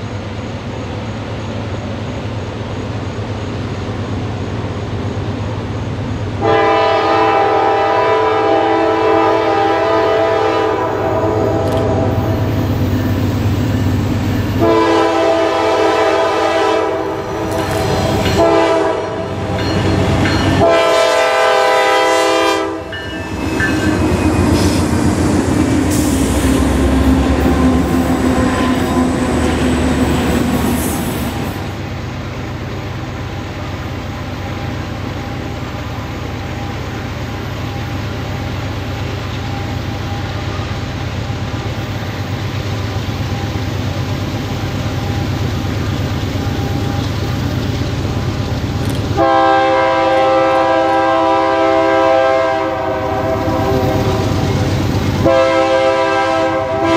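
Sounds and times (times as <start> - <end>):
locomotive engines rumbling: 0.0 - 56.9
locomotive air horn blasts: 6.4 - 12.4, 14.6 - 19.5, 20.6 - 23.9, 49.1 - 54.6, 55.2 - 56.9
wheels clacking on rails: 16.9 - 49.8.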